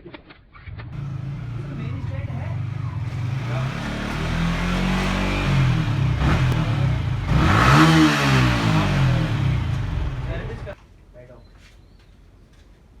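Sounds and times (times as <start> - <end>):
motorcycle engine revving: 0.7 - 10.8.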